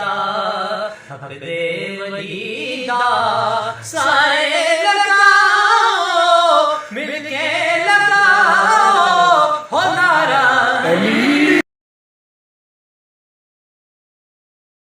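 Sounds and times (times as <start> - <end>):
person singing devotional melody: 0.0 - 11.6.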